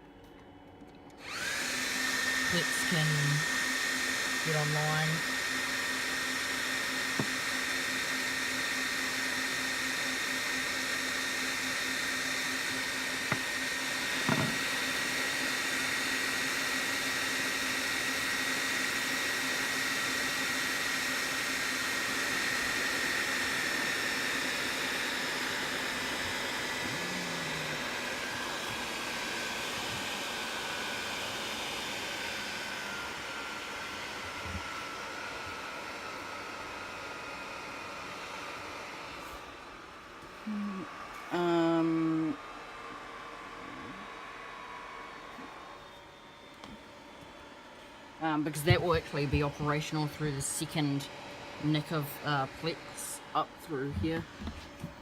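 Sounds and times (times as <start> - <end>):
high fan whine: 0.0 - 55.0
server cooling fans rushing: 24.3 - 55.0.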